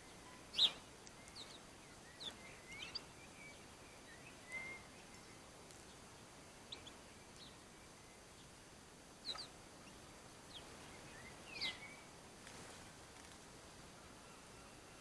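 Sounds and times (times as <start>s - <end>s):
birds chirping: 0.0s - 8.6s, 9.2s - 12.2s
faint steady hiss: 0.0s - 15.0s.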